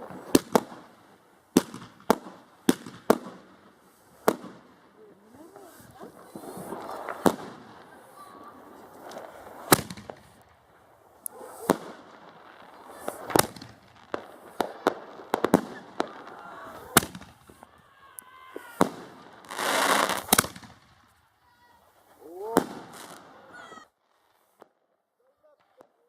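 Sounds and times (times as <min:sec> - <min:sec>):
firework bangs with echo: 0:00.0 - 0:00.9, 0:01.5 - 0:03.5, 0:04.2 - 0:04.8, 0:05.4 - 0:10.7, 0:11.3 - 0:17.8, 0:18.5 - 0:21.1, 0:22.4 - 0:23.6
fireworks hissing and crackling: 0:00.0 - 0:26.0.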